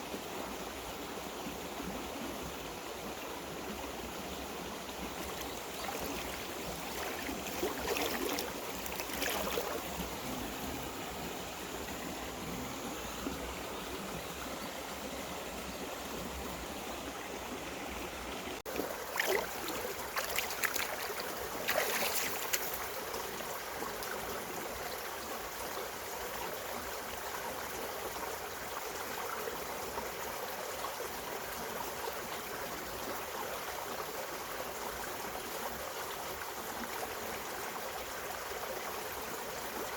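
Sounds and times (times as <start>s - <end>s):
stream running over rocks: 0.0s - 39.9s
water splashing: 5.0s - 10.2s, 18.7s - 23.4s.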